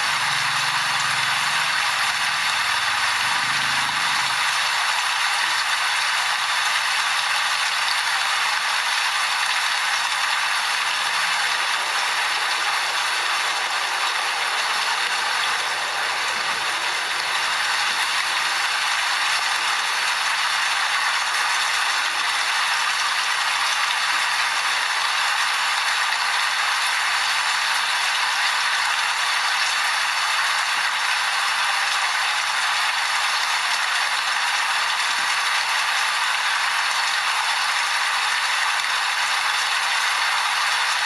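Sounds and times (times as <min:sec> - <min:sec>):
rain falling steadily: 0:00.0 - 0:41.0.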